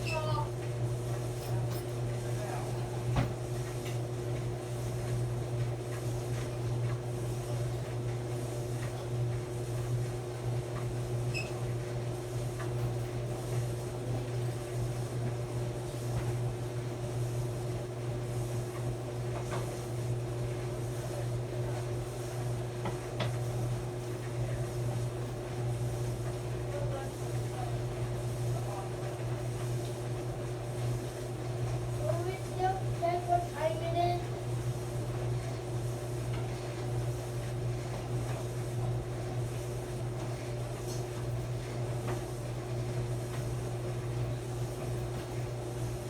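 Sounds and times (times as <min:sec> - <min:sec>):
clothes dryer humming: 0:00.0 - 0:46.0.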